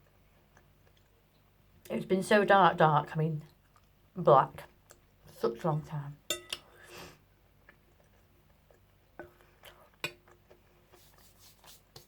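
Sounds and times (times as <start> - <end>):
cutlery clicking on a plate: 6.3 - 6.7.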